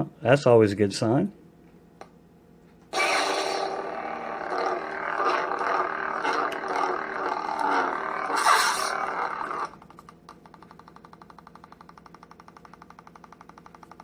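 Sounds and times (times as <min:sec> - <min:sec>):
lightsaber igniting: 0:02.9 - 0:04.1
lightsaber humming: 0:02.9 - 0:10.0.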